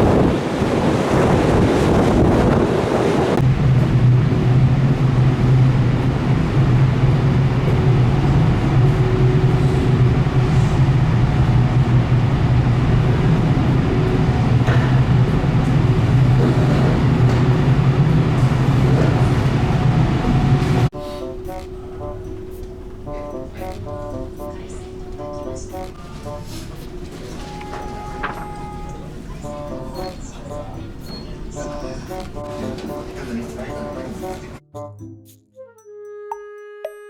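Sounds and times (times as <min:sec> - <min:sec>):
wind and waves: 0:00.0 - 0:20.9
ship engine drone: 0:00.0 - 0:34.6
music: 0:20.9 - 0:37.0.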